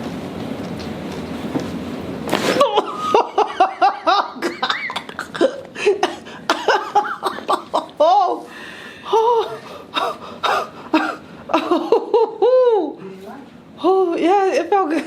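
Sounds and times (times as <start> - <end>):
woman laughing and exclaiming: 2.6 - 8.5, 9.1 - 9.7, 11.0 - 13.0.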